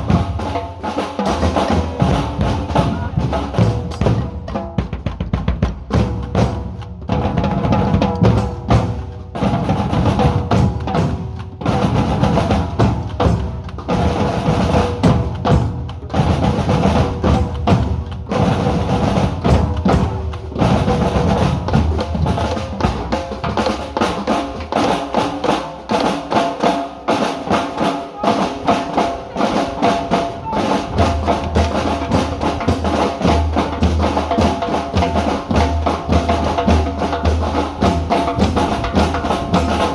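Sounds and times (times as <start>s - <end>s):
group drumming: 0.0s - 39.9s.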